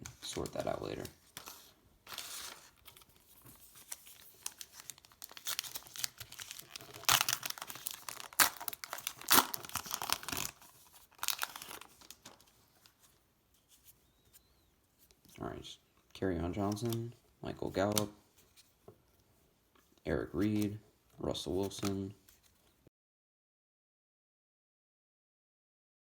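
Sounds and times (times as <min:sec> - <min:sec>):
card pack wrapper tearing: 0:00.2 - 0:12.5.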